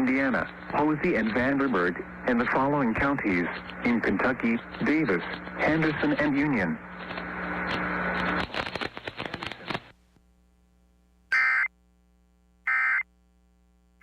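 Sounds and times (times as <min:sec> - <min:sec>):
crackling static: 0:00.0 - 0:14.0.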